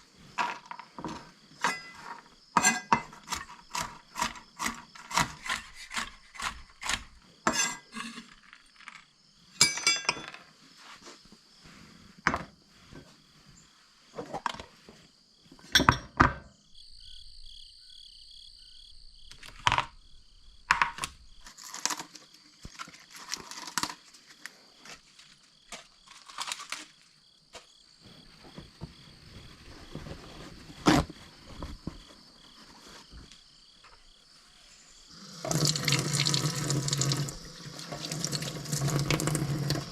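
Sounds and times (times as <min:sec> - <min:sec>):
dishes and utensils clinking: 0:01.6 - 0:03.2, 0:07.5 - 0:08.4, 0:09.6 - 0:10.4.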